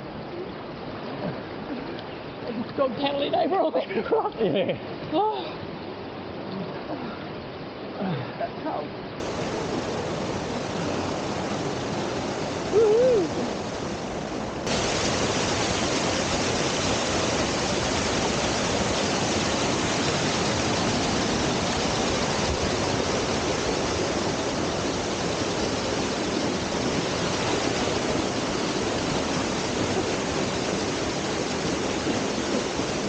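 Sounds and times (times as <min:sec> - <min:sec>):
waterfall pouring into pool: 0:09.2 - 0:33.0.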